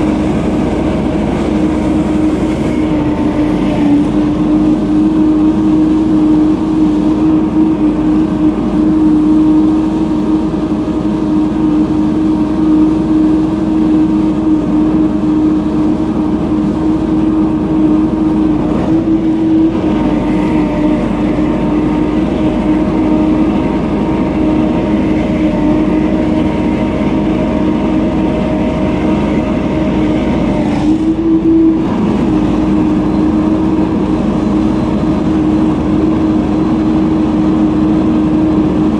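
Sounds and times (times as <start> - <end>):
leaf blower running: 0.0 - 38.9.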